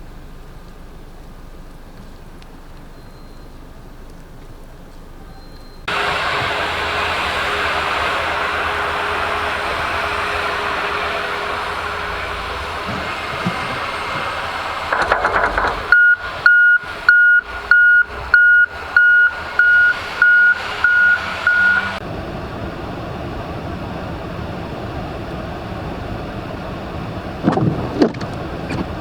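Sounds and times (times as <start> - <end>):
vehicle noise: 0.0 - 29.0
electronic warning beeps: 15.6 - 21.9.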